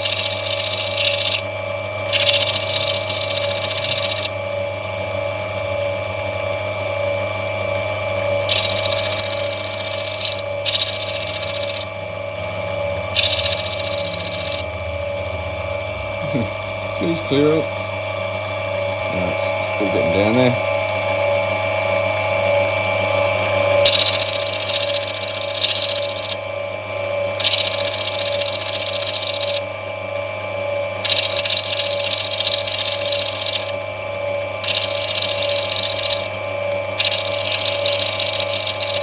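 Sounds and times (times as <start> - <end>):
stone hissing on wet wheel: 0.0 - 1.4, 8.5 - 11.9, 13.2 - 14.6, 23.9 - 26.4, 31.0 - 33.7, 34.6 - 36.3, 37.0 - 39.0
grinding wheel motor hum: 0.0 - 39.0.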